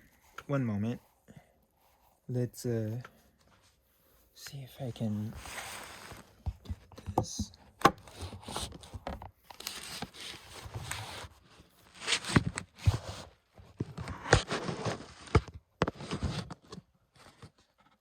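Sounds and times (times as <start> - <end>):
packing material crinkling and tearing: 9.4 - 11.3.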